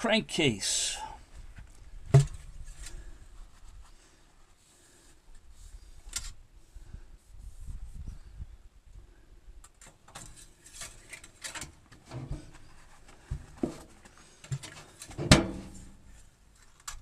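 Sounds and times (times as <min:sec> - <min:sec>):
light clicks and rustles: 0:16.1 - 0:17.0.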